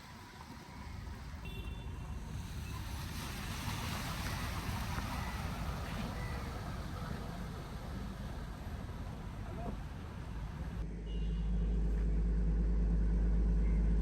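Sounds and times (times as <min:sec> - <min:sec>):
floodwater rushing: 0:00.0 - 0:10.8.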